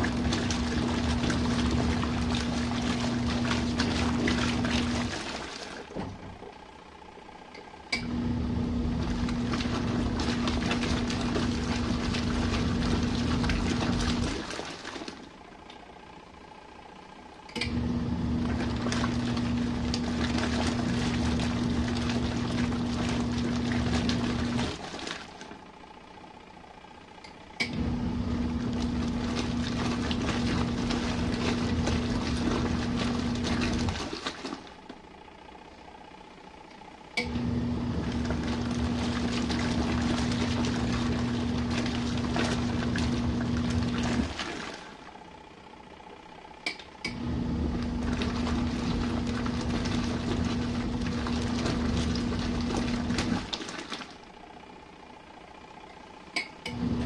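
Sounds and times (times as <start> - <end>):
washing machine churning water: 0.0 - 57.0
washing machine click: 46.6 - 47.3, 56.3 - 56.9.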